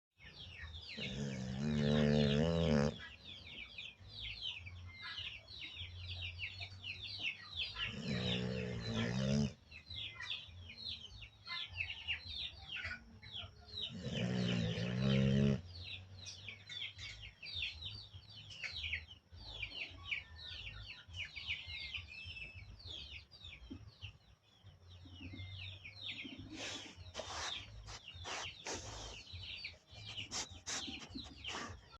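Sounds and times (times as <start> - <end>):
birds chirping: 0.2 - 31.9
dog snoring: 1.0 - 3.1, 7.8 - 9.6, 13.8 - 15.7.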